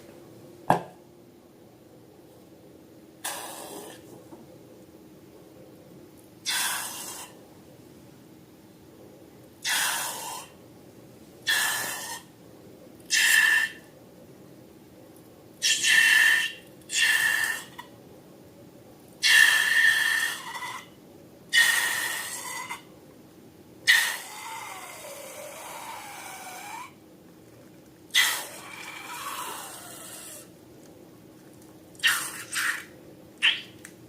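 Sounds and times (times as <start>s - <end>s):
balloon air hissing: 3.2s - 4.0s.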